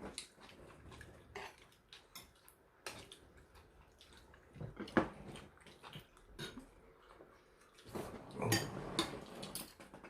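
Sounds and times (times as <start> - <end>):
cutlery clinking on dishes: 8.4 - 9.9.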